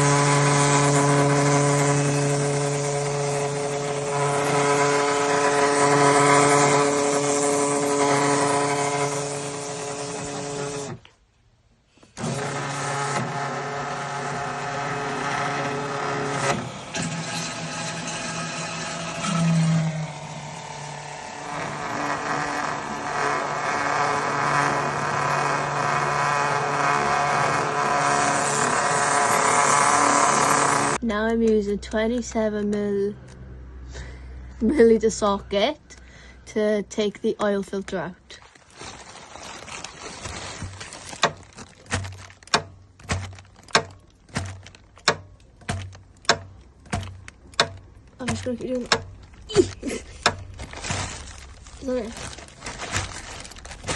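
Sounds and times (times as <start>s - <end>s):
electric oil pump humming: 0.0s - 11.0s, 12.2s - 31.0s.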